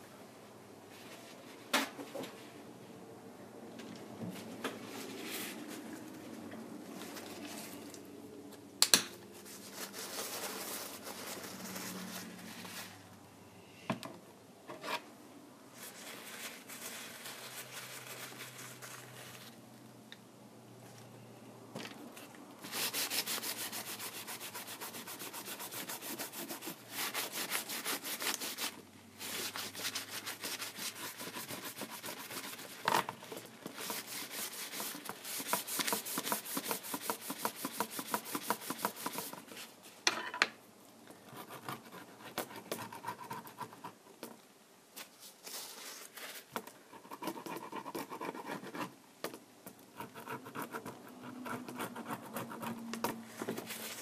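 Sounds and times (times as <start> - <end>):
hand tool scraping tablet: 22.6 - 39.5.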